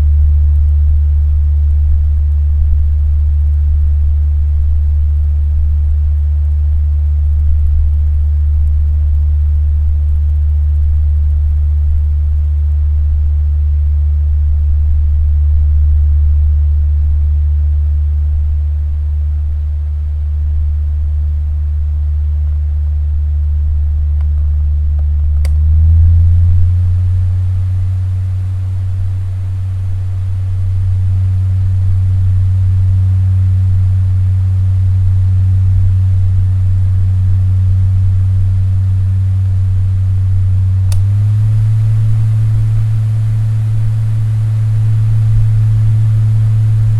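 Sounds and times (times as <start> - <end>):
electric fan motor hum: 0.0 - 46.9
fan switch click: 25.0 - 25.9, 40.8 - 46.9.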